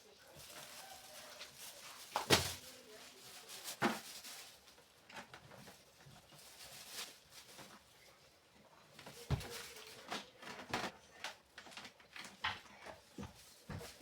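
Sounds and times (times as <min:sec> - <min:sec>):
light clicks and clatter: 0:08.9 - 0:14.0.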